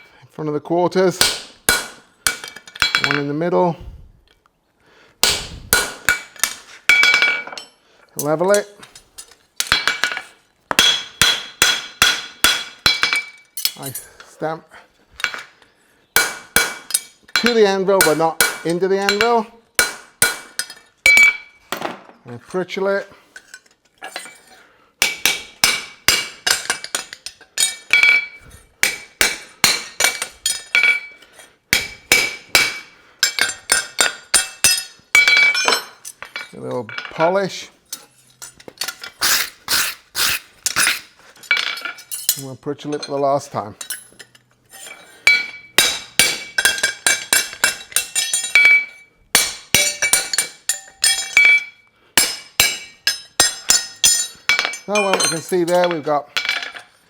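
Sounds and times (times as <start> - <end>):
hammer striking metal on anvil: 1.2 - 3.2, 5.2 - 7.6, 9.6 - 13.8, 16.2 - 21.5, 25.0 - 31.1, 31.7 - 37.1, 45.3 - 56.8.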